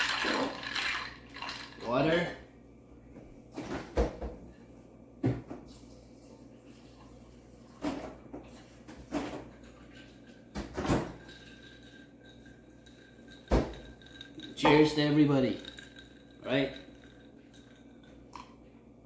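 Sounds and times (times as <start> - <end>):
clunks and knocks of kitchen items: 3.5 - 4.5, 5.2 - 5.7, 7.7 - 11.5, 13.4 - 15.1.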